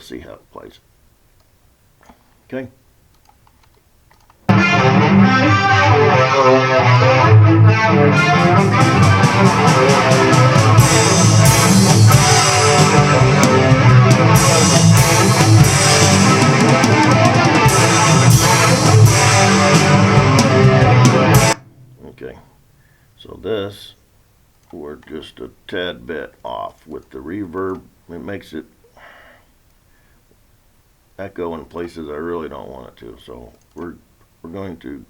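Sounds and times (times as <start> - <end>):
drums: 4.4 - 22.9
electric guitar: 4.5 - 22.0.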